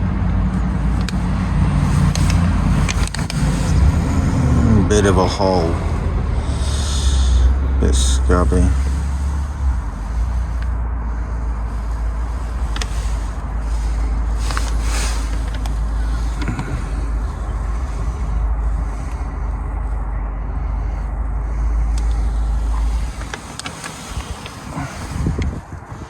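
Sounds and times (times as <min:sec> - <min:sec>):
wind buffeting microphone: 0:00.0 - 0:26.0
faint clicks: 0:00.5 - 0:01.2.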